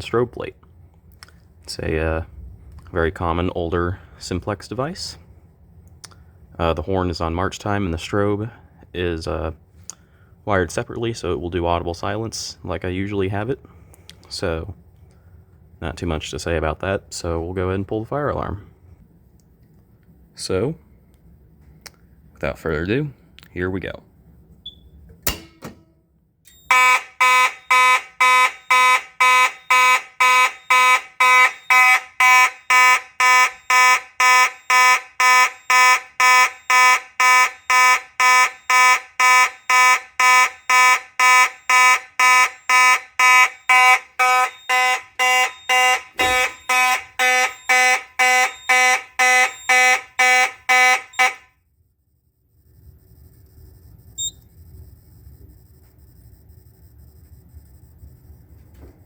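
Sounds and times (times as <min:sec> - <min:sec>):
fire alarm horn blasts: 0:26.5 - 0:51.6.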